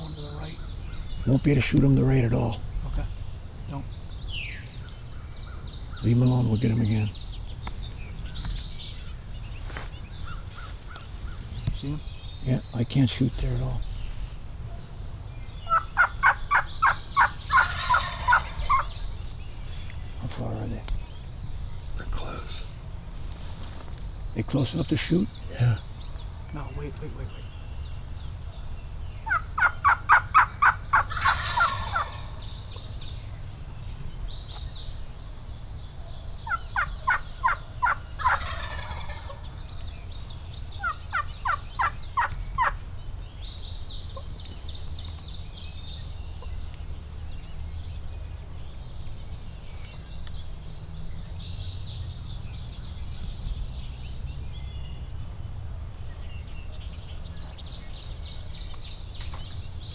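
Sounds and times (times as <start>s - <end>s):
faint songbirds chirping: 0.0s - 59.9s
wild turkey yelping: 7.6s - 12.1s, 15.6s - 22.7s, 29.2s - 33.2s, 36.0s - 40.1s, 40.7s - 42.9s.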